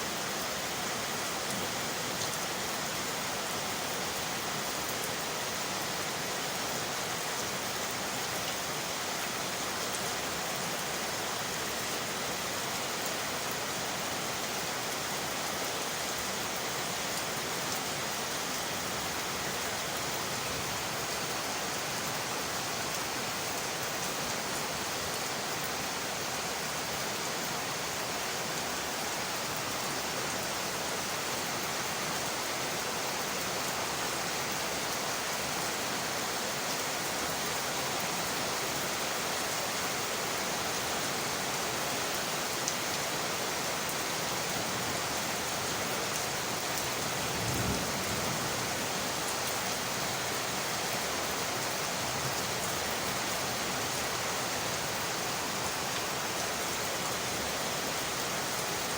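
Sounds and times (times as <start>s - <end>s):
rain on windowpanes: 0.0s - 58.9s.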